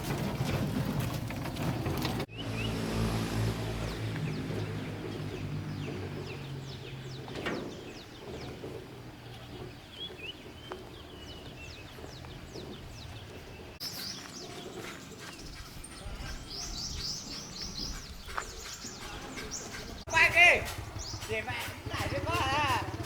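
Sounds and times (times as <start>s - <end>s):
low engine hum: 0.0s - 10.8s
small birds chirping: 3.6s - 23.0s.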